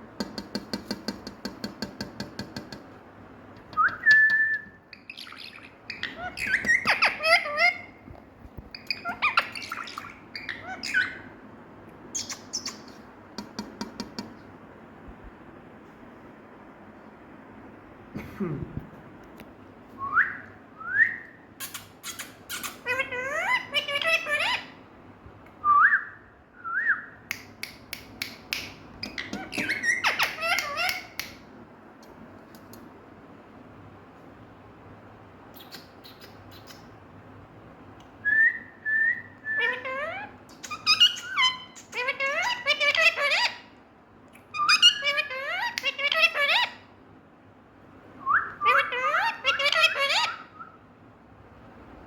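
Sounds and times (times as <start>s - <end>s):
parakeet clicks: 0.2s - 2.9s, 12.2s - 14.4s, 27.3s - 31.4s
parakeet chirping and squawking: 4.9s - 8.1s, 8.7s - 11.4s, 12.1s - 13.1s, 21.6s - 24.8s, 28.7s - 31.4s, 39.6s - 43.8s, 44.5s - 47.0s, 48.6s - 50.6s
parrot squeaky chatter: 5.0s - 8.0s, 8.8s - 11.3s, 12.2s - 13.0s, 21.6s - 24.8s, 29.0s - 31.2s, 39.6s - 43.7s, 44.5s - 46.8s, 48.6s - 50.5s.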